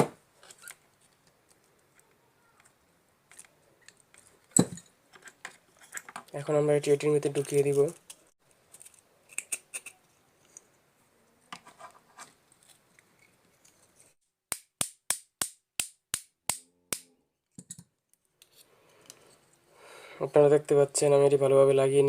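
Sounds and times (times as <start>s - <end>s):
light scraping of parts: 0.4s - 6.5s, 11.4s - 14.2s.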